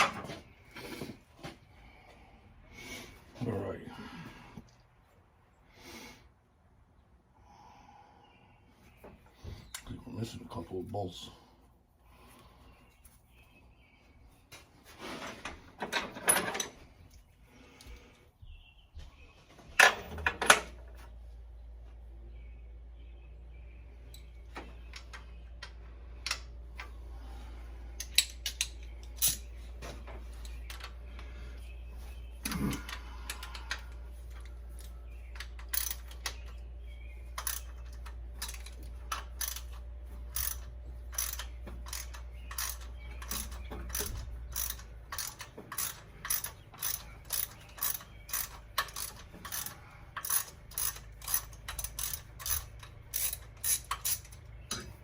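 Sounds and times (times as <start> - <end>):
ratchet wrench clicking: 35.4 - 36.4, 37.4 - 54.5.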